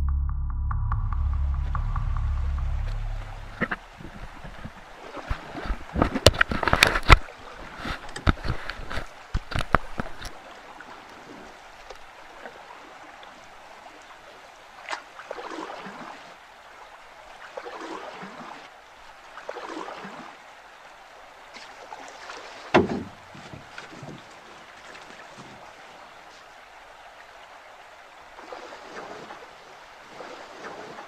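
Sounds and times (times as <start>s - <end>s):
paddle swishing through water: 2.8s - 16.4s, 17.4s - 20.5s, 21.4s - 26.7s, 28.3s - 31.0s
paddle knocking on canoe hull: 22.7s - 24.3s.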